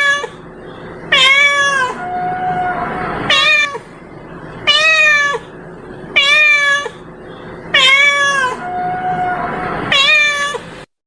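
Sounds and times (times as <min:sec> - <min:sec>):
cat meowing: 0:00.0 - 0:00.4, 0:01.1 - 0:03.9, 0:04.7 - 0:05.5, 0:06.2 - 0:07.0, 0:07.7 - 0:10.7.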